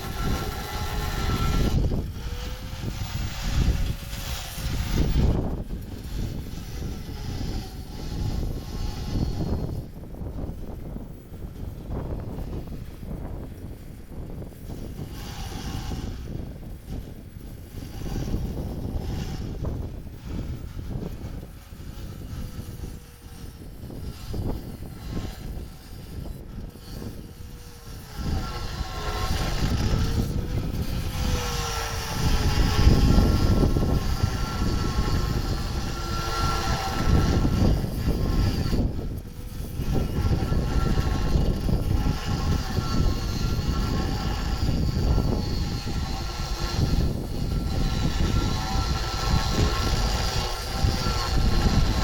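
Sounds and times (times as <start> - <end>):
machine whining: 0.0 - 52.0.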